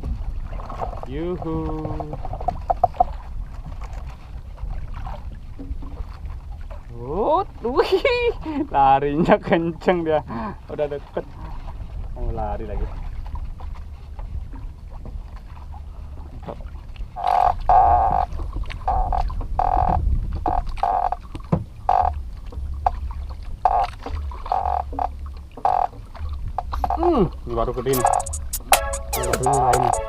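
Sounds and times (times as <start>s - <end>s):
fishing reel drag buzzing: 24.5s - 25.1s.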